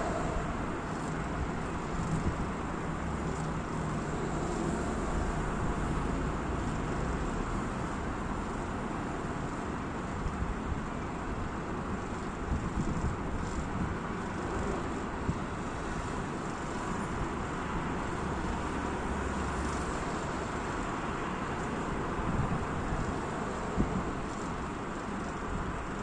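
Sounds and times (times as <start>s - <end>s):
road traffic noise: 0.0s - 26.0s
wind buffeting microphone: 12.4s - 14.6s.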